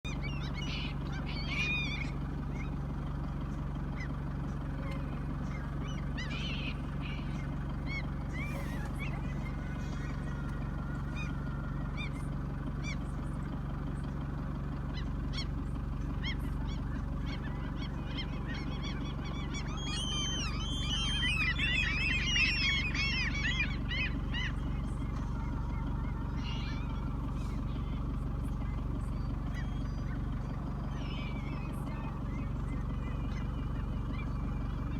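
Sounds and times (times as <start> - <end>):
birds calling: 0.0 - 34.9
steady low hum: 0.0 - 34.9.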